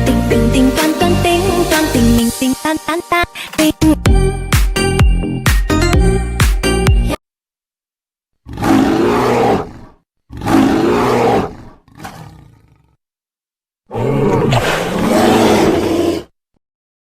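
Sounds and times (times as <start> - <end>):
person roaring like a big cat: 8.4 - 13.0, 13.9 - 16.3.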